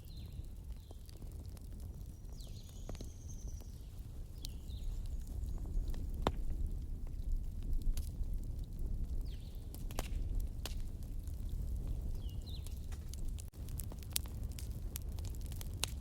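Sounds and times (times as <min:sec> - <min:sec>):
small birds chirping: 0:00.0 - 0:01.2, 0:02.0 - 0:06.1, 0:09.1 - 0:09.8, 0:11.8 - 0:13.1
wood fire crackling: 0:00.0 - 0:16.0.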